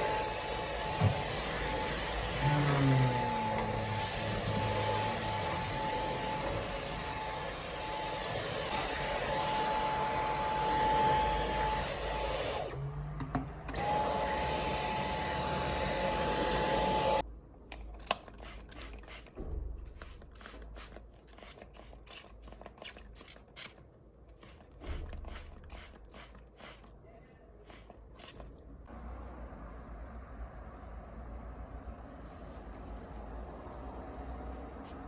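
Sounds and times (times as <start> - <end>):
appliance motor whining: 0.0 - 17.2.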